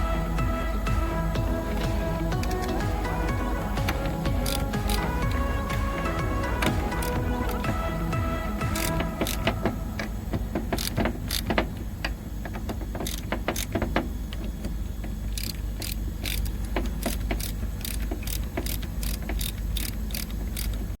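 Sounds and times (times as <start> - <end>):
steady low hum: 0.0 - 12.8
sharp metallic clicks: 15.3 - 20.9.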